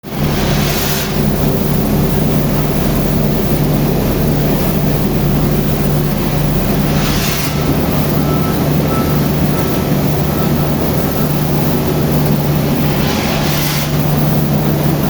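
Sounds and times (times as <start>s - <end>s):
concrete pump machine hum: 0.0s - 15.0s
sharper hiss: 6.2s - 15.0s
hiss: 6.7s - 15.0s.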